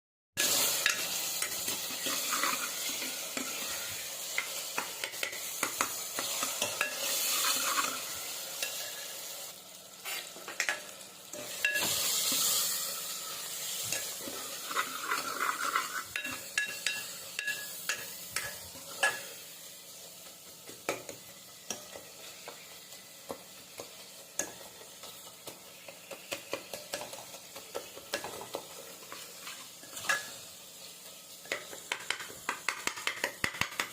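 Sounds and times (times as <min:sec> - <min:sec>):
spatula scraping metal pan: 0:00.4 - 0:09.2, 0:10.0 - 0:19.3
food sizzling in a pan: 0:00.4 - 0:33.9.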